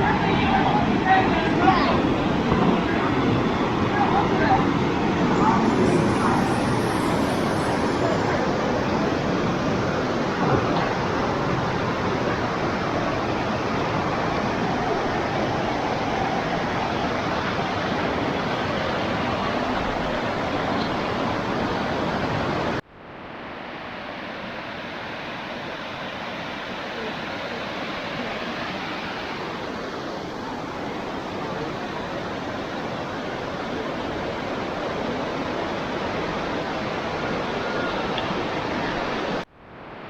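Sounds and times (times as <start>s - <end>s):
waterfall rushing: 0.0s - 22.8s.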